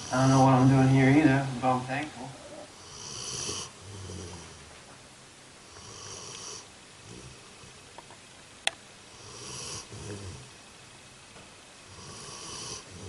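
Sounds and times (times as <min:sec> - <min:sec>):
deep snoring: 0:00.0 - 0:00.7, 0:02.7 - 0:04.6, 0:05.7 - 0:07.8, 0:09.1 - 0:10.5, 0:11.9 - 0:13.0.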